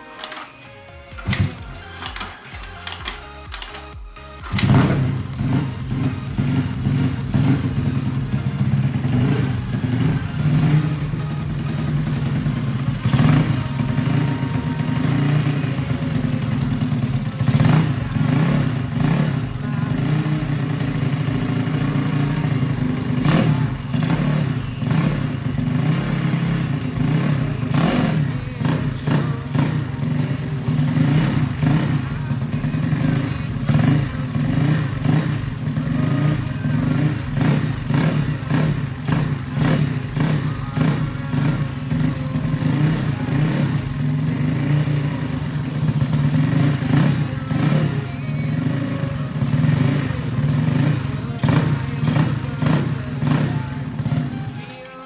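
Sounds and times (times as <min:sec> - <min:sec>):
scooter engine running: 0:00.0 - 0:55.0
engine clatter and knocks: 0:01.1 - 0:54.4.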